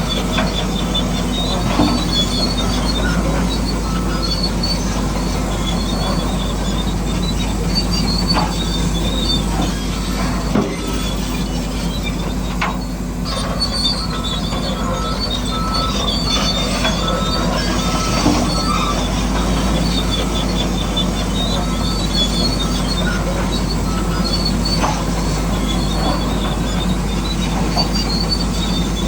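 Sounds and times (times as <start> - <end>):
electric motors whining: 0.0 - 29.0.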